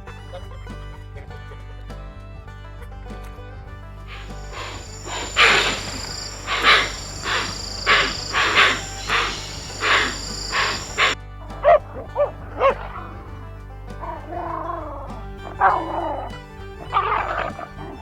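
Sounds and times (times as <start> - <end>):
background music: 0.0 - 18.0
harsh animal calls: 4.0 - 13.1, 15.5 - 18.0
steady high whine: 4.1 - 11.2.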